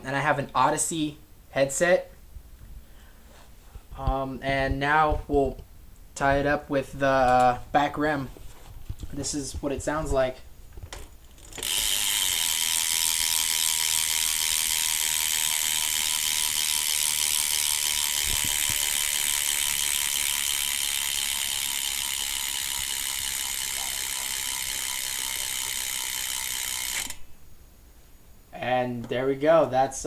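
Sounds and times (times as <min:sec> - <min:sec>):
bike hub ratcheting buzz: 0:10.9 - 0:27.3.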